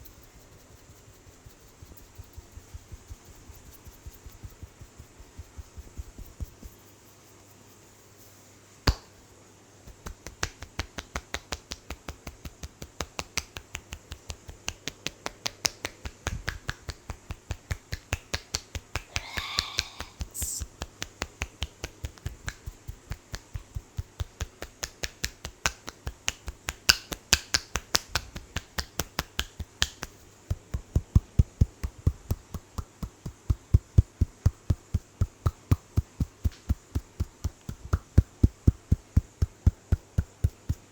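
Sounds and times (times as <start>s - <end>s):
rapid clicking taps: 9.9s - 40.9s.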